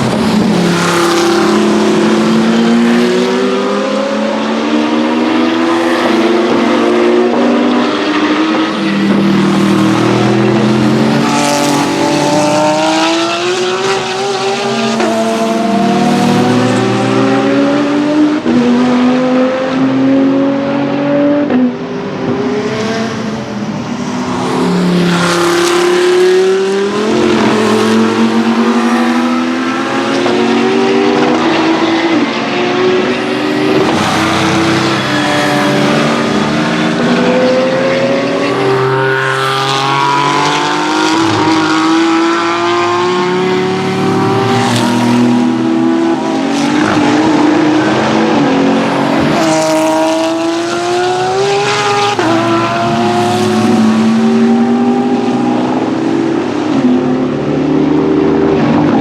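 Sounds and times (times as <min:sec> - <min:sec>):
racing car engines passing: 0:00.0 - 0:59.0.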